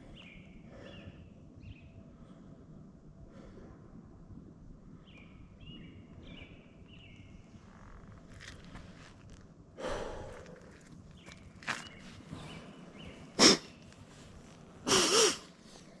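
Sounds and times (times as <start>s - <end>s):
heavy breathy exhale: 14.9s - 15.9s.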